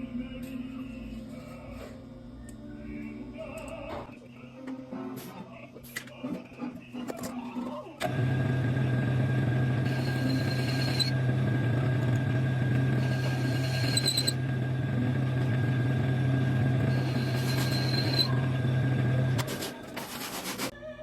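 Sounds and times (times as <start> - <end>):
lathe running: 8.0 - 20.7
tool scraping spinning workpiece: 8.0 - 20.7.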